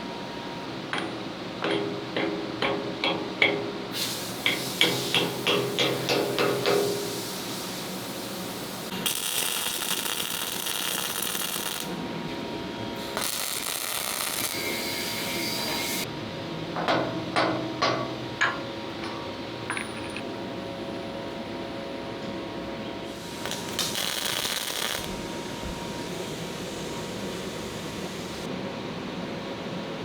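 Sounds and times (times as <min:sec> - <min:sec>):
welding crackling hiss: 0:04.0 - 0:12.0, 0:13.0 - 0:16.1, 0:23.1 - 0:28.5.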